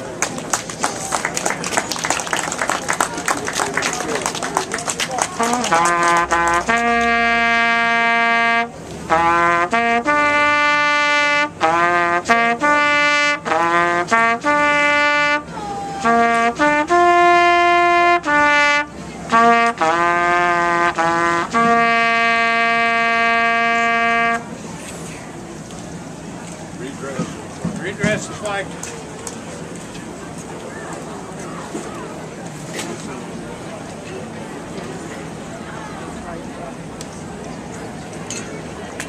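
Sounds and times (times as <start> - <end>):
solo brass melody: 5.4 - 24.6.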